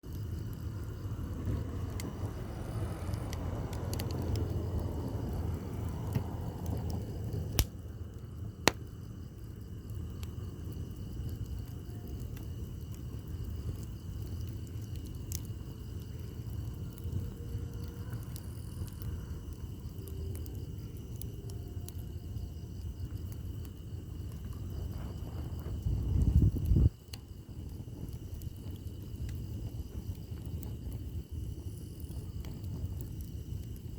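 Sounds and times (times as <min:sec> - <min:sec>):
campfire crackling and popping: 0:00.0 - 0:33.9
low rustle of flames: 0:00.0 - 0:33.9.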